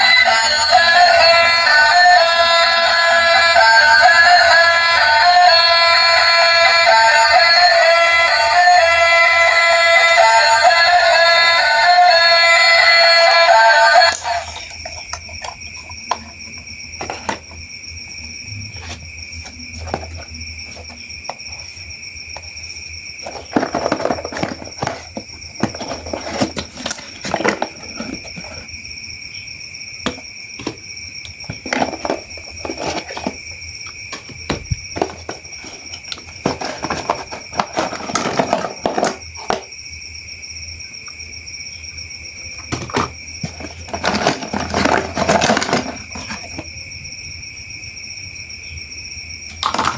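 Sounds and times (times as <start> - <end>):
steady high-pitched whine: 0.0 - 49.9
packaging rustling: 23.2 - 28.7, 31.5 - 33.4, 34.1 - 39.6, 42.7 - 46.6
plastic parts clicking: 42.6 - 46.6.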